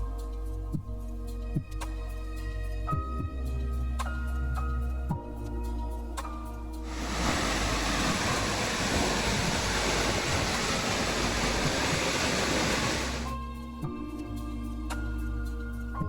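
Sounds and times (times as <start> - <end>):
music: 0.0 - 16.0
waterfall rushing water: 6.9 - 13.3.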